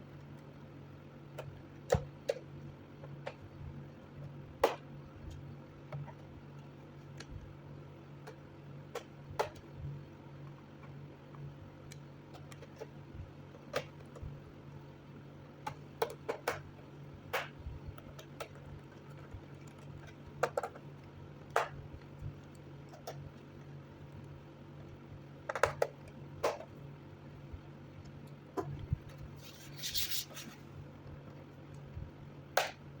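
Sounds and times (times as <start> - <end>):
steady low hum: 0.0 - 33.0
clicks and taps on laptop: 19.6 - 20.8, 21.5 - 21.9, 22.5 - 23.4, 25.4 - 26.7.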